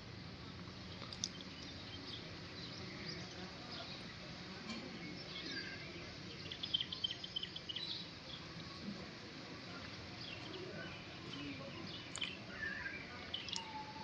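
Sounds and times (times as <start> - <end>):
outdoor background hiss: 0.0 - 14.0
faint bird chirps: 9.7 - 14.0.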